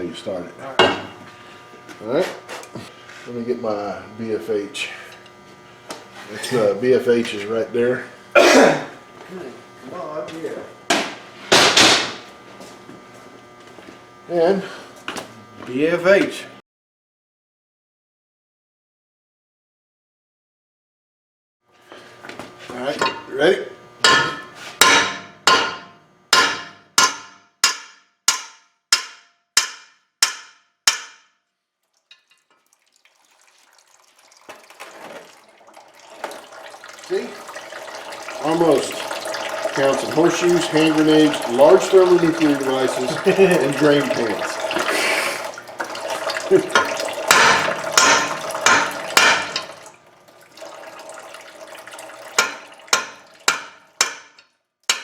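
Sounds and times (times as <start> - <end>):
hammer striking steel: 24.0 - 31.3, 47.3 - 49.7, 52.4 - 55.0
oil pouring into a pan: 31.8 - 54.0
oil dripping: 31.8 - 55.0.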